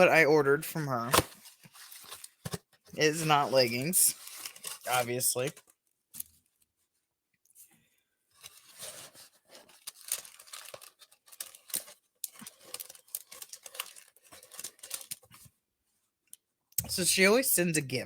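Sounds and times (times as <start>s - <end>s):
wrapping tearing and rustling: 1.1s - 2.4s, 3.0s - 5.7s, 8.4s - 15.4s.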